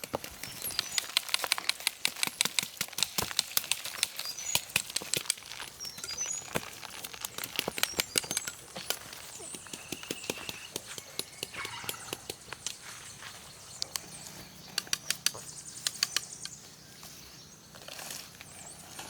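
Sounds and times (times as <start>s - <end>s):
dense clicking and crackling: 0.0s - 11.7s
high bird chirps: 5.5s - 17.7s.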